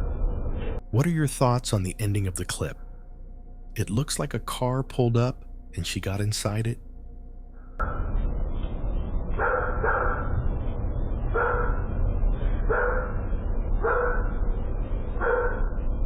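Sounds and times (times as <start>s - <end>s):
steady low rumble: 0.0s - 16.0s
dog barking: 9.4s - 10.4s, 11.3s - 11.9s, 12.7s - 13.2s, 13.8s - 14.4s, 15.2s - 15.8s.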